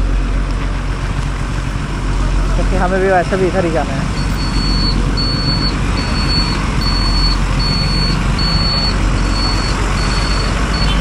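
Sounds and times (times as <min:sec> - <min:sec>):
motorcycle engine: 0:00.0 - 0:11.0
road noise: 0:00.0 - 0:11.0
high electronic beeps: 0:04.1 - 0:11.0.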